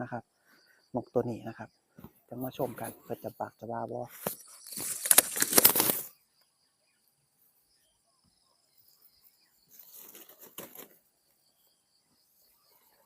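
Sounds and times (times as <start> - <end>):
faint rustle: 8.8 - 11.5.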